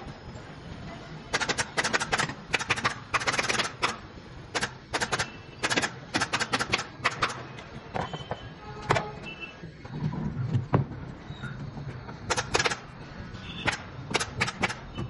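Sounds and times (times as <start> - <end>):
pneumatic staple gun firing: 1.4 - 7.4, 12.3 - 12.9, 13.6 - 14.9.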